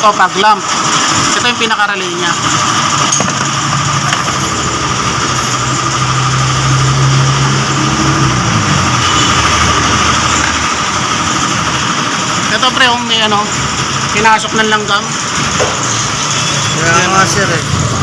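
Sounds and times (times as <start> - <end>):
engine idling: 0.0 - 18.0
low drone: 3.7 - 12.4.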